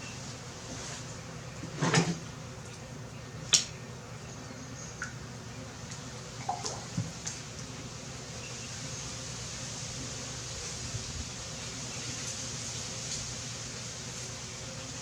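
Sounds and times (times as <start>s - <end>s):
steady hiss: 7.0s - 15.0s.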